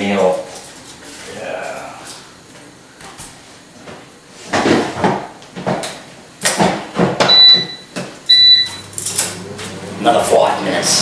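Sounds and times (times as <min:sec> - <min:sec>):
low appliance hum: 0:00.0 - 0:11.0
electronic beeps from appliance: 0:07.2 - 0:09.0.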